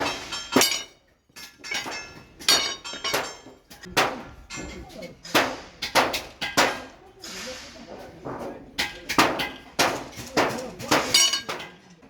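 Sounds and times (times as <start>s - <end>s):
hammer striking steel on anvil: 5.3s - 7.0s.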